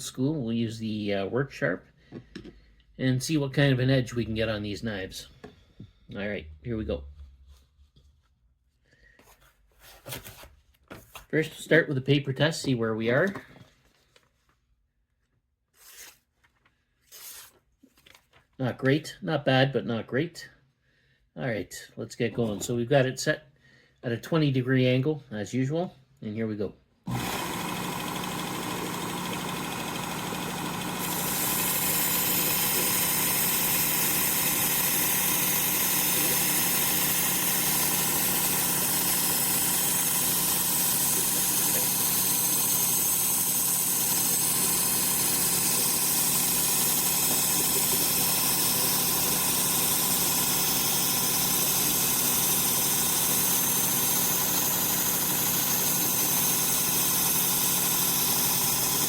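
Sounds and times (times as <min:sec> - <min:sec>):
belt sharpener grinding knife: 0:27.1 - 0:59.0.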